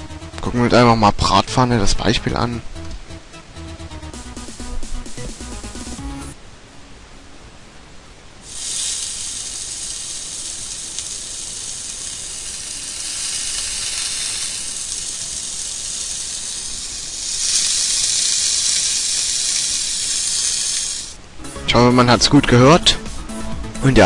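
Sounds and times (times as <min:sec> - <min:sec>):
food sizzling in a frying pan: 0:08.4 - 0:21.2.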